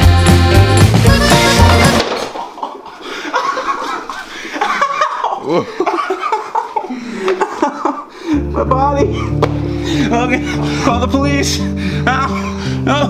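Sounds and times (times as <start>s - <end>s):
man laughing: 2.4s - 11.5s.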